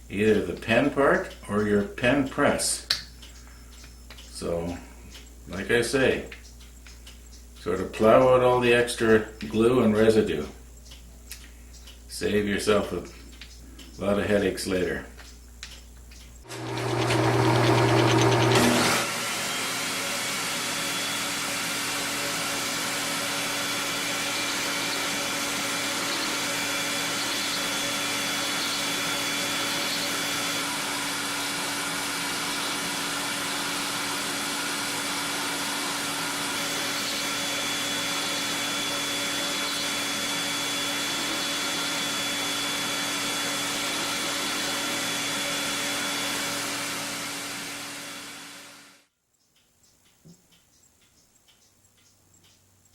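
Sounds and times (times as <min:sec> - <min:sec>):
electric motor running: 0:16.4 - 0:49.0.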